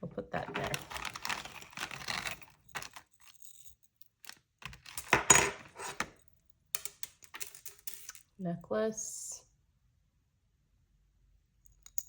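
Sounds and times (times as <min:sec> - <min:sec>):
metal jewelry clinking: 0:00.4 - 0:08.3.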